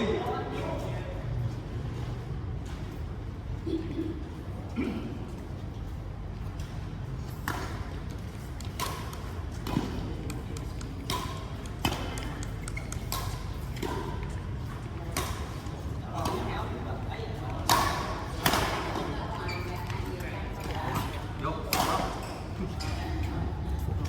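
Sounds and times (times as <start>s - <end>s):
rackets striking shuttlecock: 7.4s - 16.5s, 17.6s - 19.0s.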